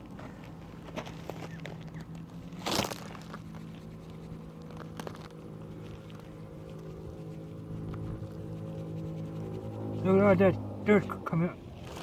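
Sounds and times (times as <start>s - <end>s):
steady low hum: 0.0s - 12.0s
cloth rubbing on wheel rim: 2.4s - 12.0s.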